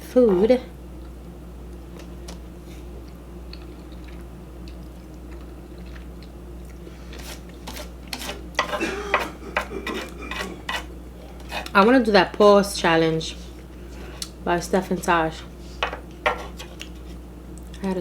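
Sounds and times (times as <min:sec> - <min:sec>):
steady low hum: 0:00.0 - 0:18.0
wet chewing clicks and smacks: 0:03.0 - 0:06.8.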